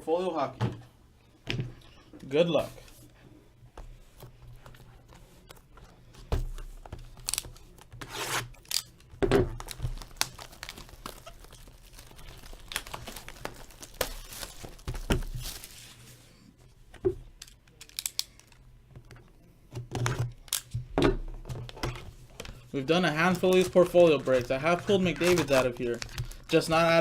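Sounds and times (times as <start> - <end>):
plastic wrap tearing and crinkling: 7.1 - 16.1, 22.9 - 27.0.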